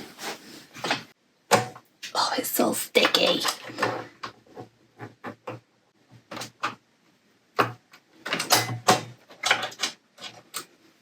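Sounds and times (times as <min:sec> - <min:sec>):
plastic parts clicking and knocking: 0:03.0 - 0:11.0.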